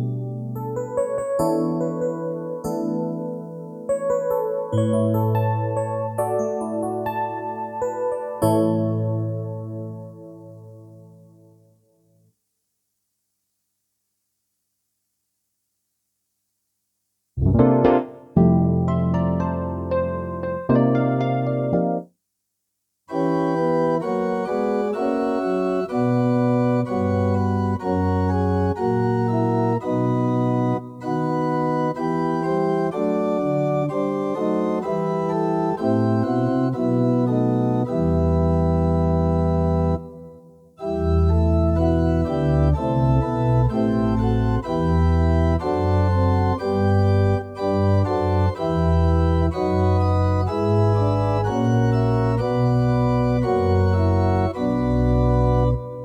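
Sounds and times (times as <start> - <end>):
keyboard organ chords and bass: 0.0 - 0.9, 17.4 - 22.0, 23.4 - 56.0.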